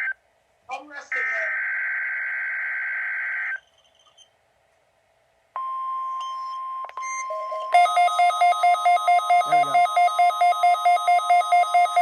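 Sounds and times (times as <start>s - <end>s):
steady warning alarm tone: 5.6s - 12.0s.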